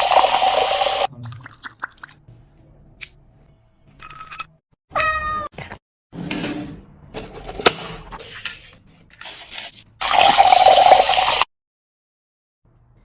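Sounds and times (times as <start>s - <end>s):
cat meowing: 4.9s - 5.6s.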